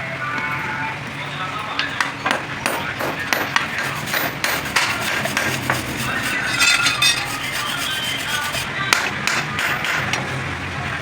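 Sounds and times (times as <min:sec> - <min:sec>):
sharp knocks: 0:02.0 - 0:07.3
metal scraping and ringing: 0:03.1 - 0:10.2
metal tools clinking and tapping: 0:06.3 - 0:07.8.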